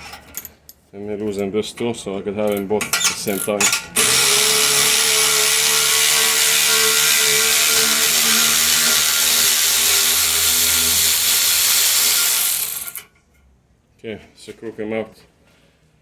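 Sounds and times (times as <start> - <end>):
power tool removing bolt: 2.9 - 13.0.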